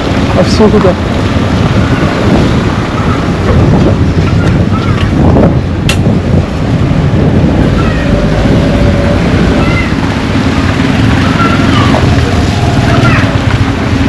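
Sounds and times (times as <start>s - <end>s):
wind rumbling on microphone: 0.0s - 14.0s
sharp click: 5.9s - 6.1s.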